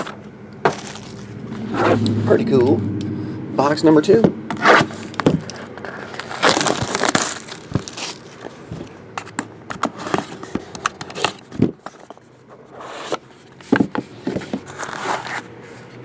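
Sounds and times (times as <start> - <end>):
cards handled with clicks and rustles: 0.0 - 2.1, 4.5 - 16.0
plastic wrapper crinkling and tearing: 0.7 - 1.3, 4.8 - 8.6.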